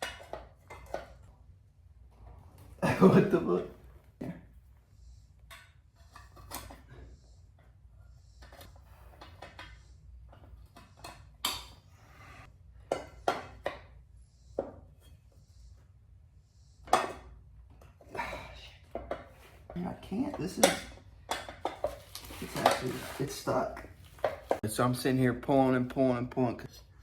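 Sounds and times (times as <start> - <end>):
hand tools clinking on metal: 20.1 - 23.6.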